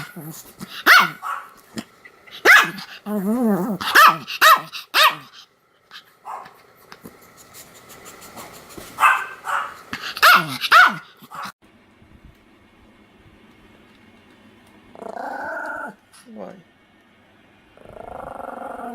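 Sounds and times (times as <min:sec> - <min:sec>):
small dog yapping: 0:00.8 - 0:01.6, 0:02.4 - 0:02.9, 0:03.6 - 0:05.4, 0:06.3 - 0:06.6, 0:09.0 - 0:11.5
dog growling: 0:02.8 - 0:04.0, 0:14.9 - 0:16.0, 0:17.8 - 0:18.9.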